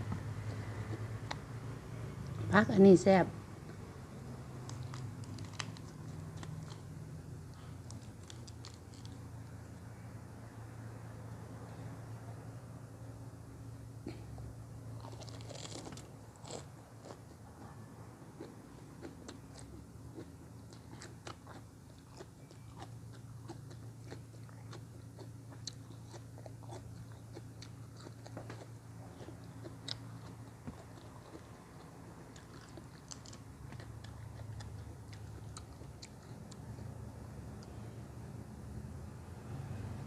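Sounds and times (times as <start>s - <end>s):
person chewing crunchy vegetables: 0.0s - 1.5s, 4.5s - 9.6s, 14.9s - 37.8s.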